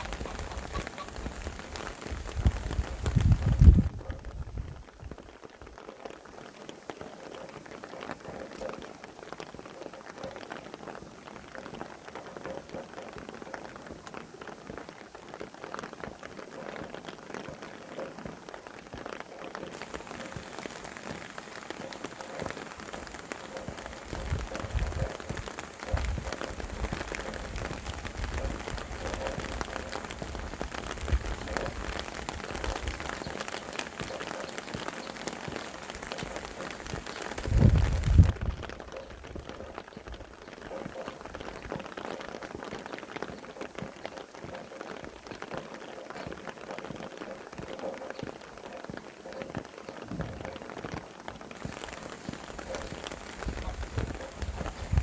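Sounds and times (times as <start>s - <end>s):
wind gusts rumbling: 0.0s - 5.3s, 19.7s - 40.4s, 51.6s - 55.0s
steady rain falling: 0.0s - 55.0s.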